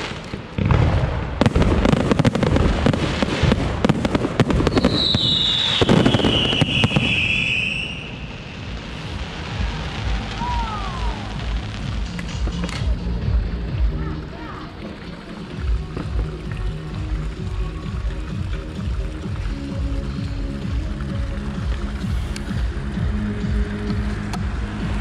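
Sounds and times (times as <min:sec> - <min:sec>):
fireworks bangs and crackling: 0:00.0 - 0:25.0
low fireworks rumble: 0:00.0 - 0:25.0
firework whistle sliding down: 0:04.7 - 0:11.4.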